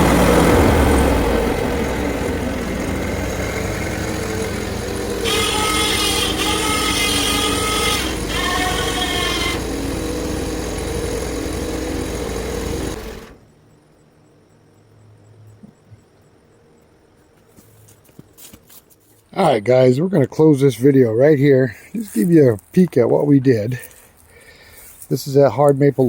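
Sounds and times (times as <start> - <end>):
sawmill engine running: 0.0 - 13.5
high-pitched whine: 0.0 - 16.0.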